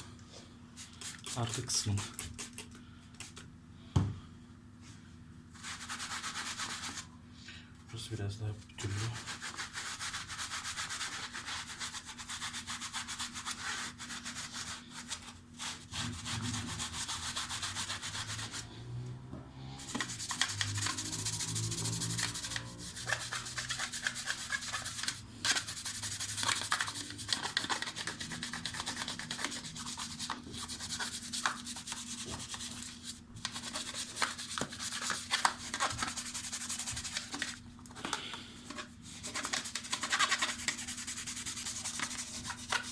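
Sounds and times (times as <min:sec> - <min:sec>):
scratchy scrubbing: 0:19.8 - 0:37.6, 0:38.7 - 0:42.9.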